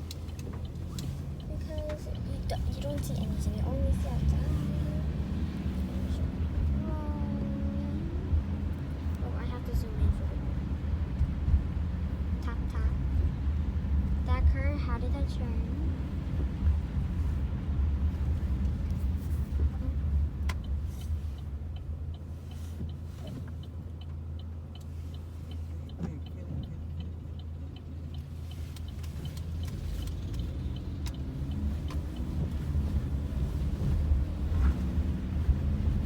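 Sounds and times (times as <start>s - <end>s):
light regular ticking: 0.0s - 5.8s, 15.1s - 36.0s
car road and engine rumble: 0.0s - 36.0s.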